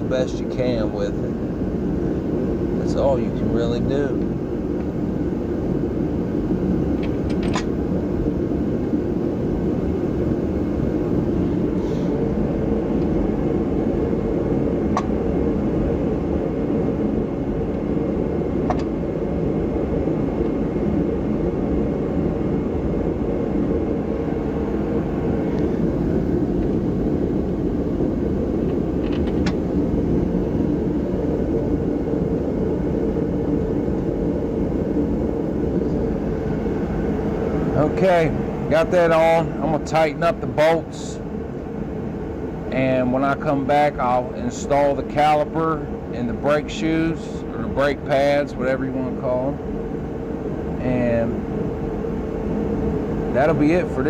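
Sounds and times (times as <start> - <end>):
low rumbling background noise: 0.0 - 54.0.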